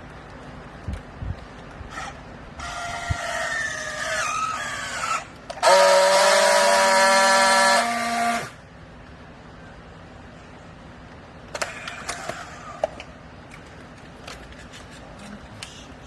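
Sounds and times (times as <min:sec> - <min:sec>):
hydraulic pump whining: 0:01.9 - 0:08.7.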